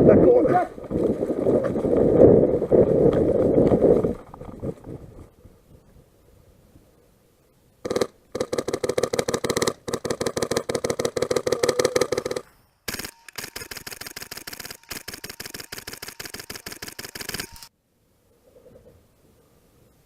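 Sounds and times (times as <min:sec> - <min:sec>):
airsoft gun firing full-auto: 0:07.9 - 0:17.7.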